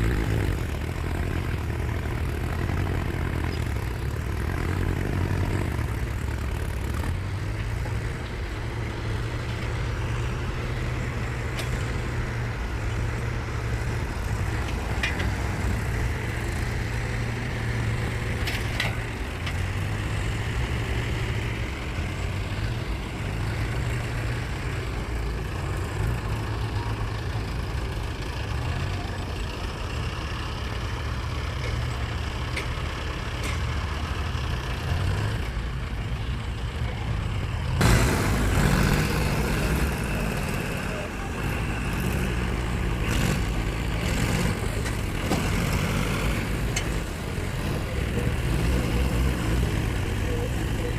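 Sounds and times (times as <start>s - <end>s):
diesel engine running: 0.0s - 50.9s.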